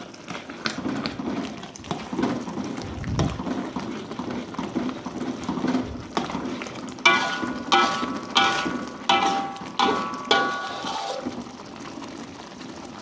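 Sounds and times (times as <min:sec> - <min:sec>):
paste sizzling in a frying pan: 0:03.6 - 0:13.0.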